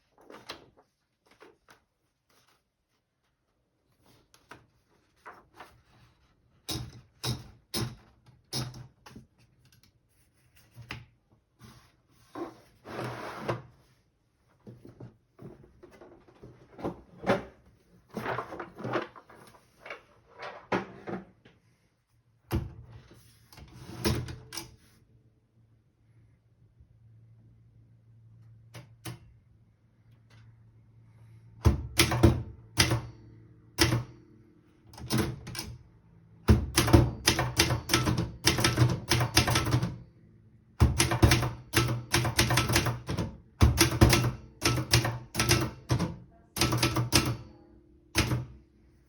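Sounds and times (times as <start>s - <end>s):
typewriter key strikes: 36.5s - 39.9s, 40.8s - 47.4s.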